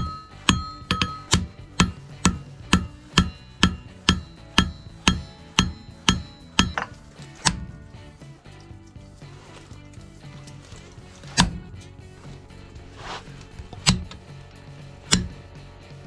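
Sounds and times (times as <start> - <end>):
anvil ringing: 0.0 - 7.8, 15.1 - 15.5
hammer striking steel on anvil: 0.0 - 7.8, 13.7 - 14.2, 15.1 - 15.5.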